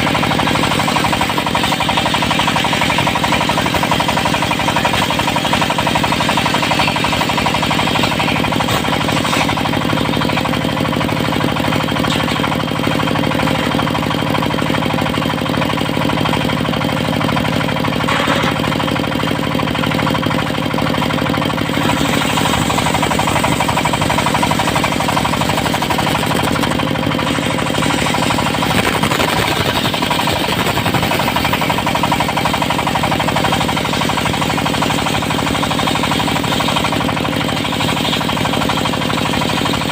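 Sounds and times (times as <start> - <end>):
diesel engine knocking: 0.0 - 39.9
saw blade ripping wood: 0.1 - 13.8, 21.6 - 33.9.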